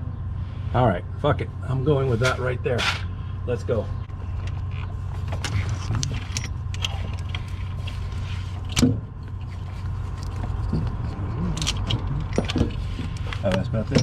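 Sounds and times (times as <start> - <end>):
low steady hum: 0.0 - 14.0
metal tools clinking and knocking: 4.4 - 7.6, 10.2 - 14.0.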